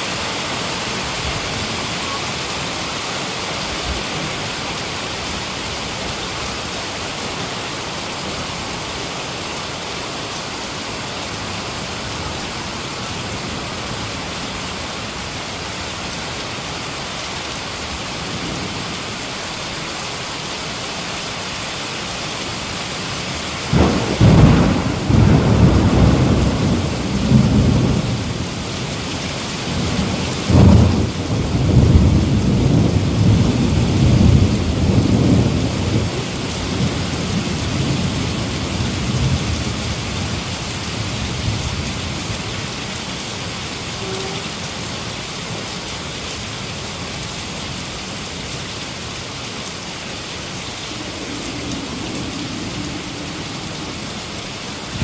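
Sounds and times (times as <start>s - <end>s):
heavy rain: 0.0s - 55.0s
thunder cracking and rumbling: 23.7s - 28.8s, 29.6s - 42.0s, 50.9s - 55.0s.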